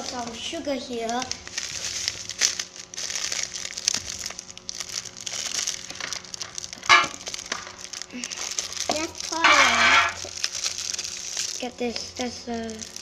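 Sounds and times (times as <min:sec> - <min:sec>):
plastic bag crinkling: 0:00.0 - 0:13.0.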